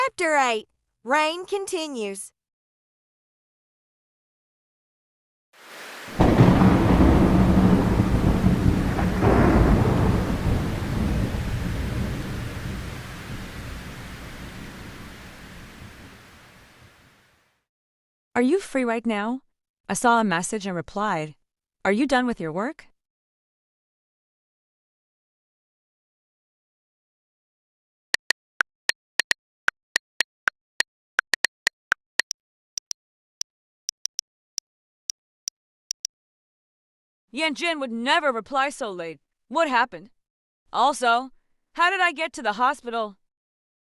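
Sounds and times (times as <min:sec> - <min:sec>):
rain: 0:05.6 - 0:17.6
thunder rumbling: 0:06.1 - 0:16.3
keyboard typing clicks: 0:28.2 - 0:29.4, 0:31.2 - 0:33.0, 0:33.9 - 0:34.2.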